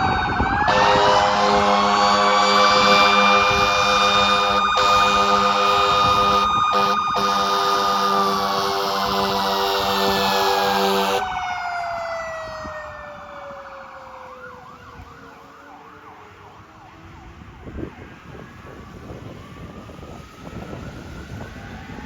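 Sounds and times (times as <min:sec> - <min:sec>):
fire engine air horn blasting: 0:00.0 - 0:12.9
siren winding down: 0:00.0 - 0:17.1
faint yelping siren: 0:00.0 - 0:22.0.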